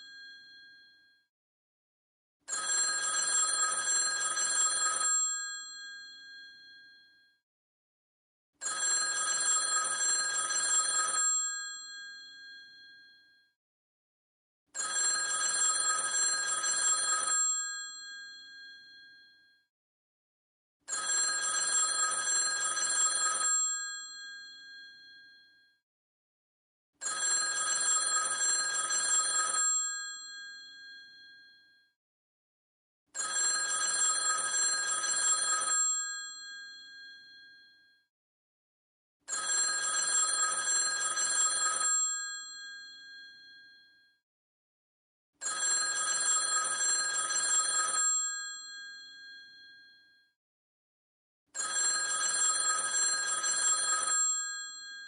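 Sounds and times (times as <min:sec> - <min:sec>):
telephone bell ringing: 0:00.0 - 0:01.1, 0:02.5 - 0:07.3, 0:08.6 - 0:13.4, 0:14.8 - 0:19.5, 0:20.9 - 0:25.7, 0:27.0 - 0:31.8, 0:33.2 - 0:37.9, 0:39.3 - 0:44.1, 0:45.4 - 0:50.1, 0:51.6 - 0:55.0.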